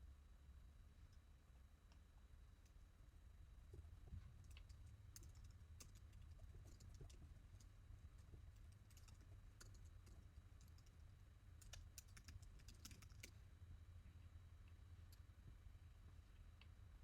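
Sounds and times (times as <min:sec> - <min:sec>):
low steady hum: 0:00.0 - 0:17.0
typing on computer keyboard: 0:04.5 - 0:07.7, 0:08.7 - 0:11.0, 0:11.6 - 0:13.3.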